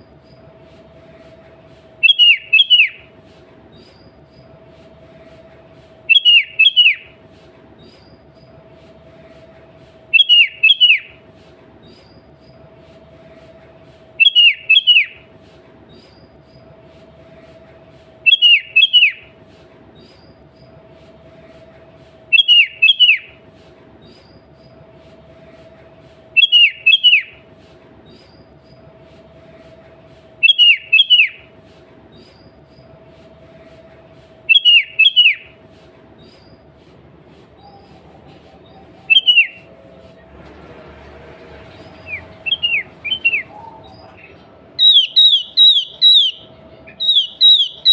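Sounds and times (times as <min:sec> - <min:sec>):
bird calling: 0:02.0 - 0:03.1, 0:06.1 - 0:07.2, 0:10.1 - 0:11.2, 0:14.2 - 0:15.3, 0:18.2 - 0:19.3, 0:22.3 - 0:23.4, 0:26.4 - 0:27.4, 0:30.4 - 0:31.5, 0:34.5 - 0:35.6, 0:37.6 - 0:40.0, 0:41.8 - 0:47.9.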